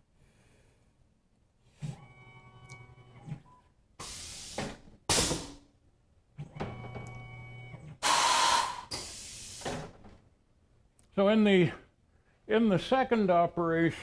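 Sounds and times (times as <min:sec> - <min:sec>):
loud hissing bursts: 0:04.0 - 0:05.5, 0:08.0 - 0:09.8.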